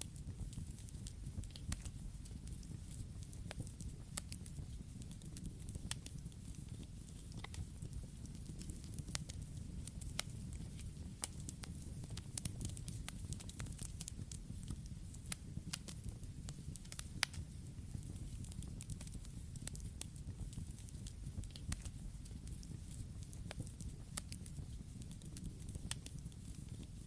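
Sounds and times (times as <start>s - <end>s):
campfire crackling and popping: 0.0s - 27.0s
low rumble of flame: 0.0s - 27.0s.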